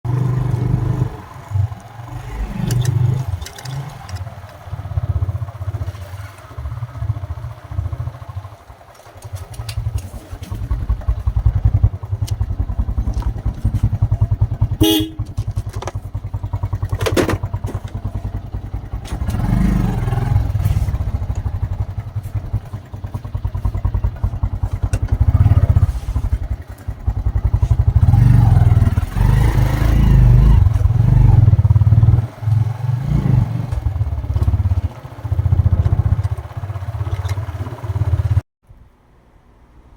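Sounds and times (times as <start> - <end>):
tractor engine throbbing: 0.0 - 38.4.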